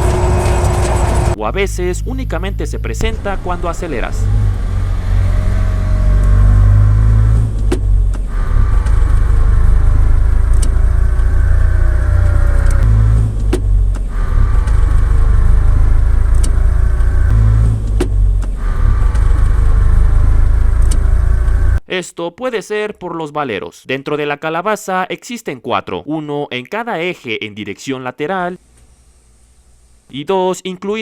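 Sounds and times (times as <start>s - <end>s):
differential whining: 0.0s - 21.8s
drivetrain rumble: 0.0s - 21.8s.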